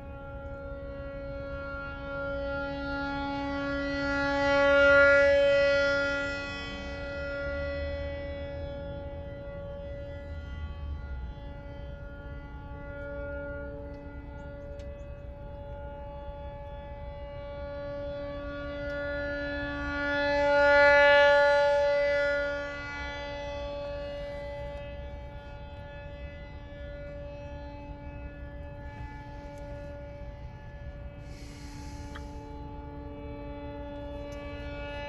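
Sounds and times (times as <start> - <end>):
rotating warning siren tone: 0.0 - 35.0.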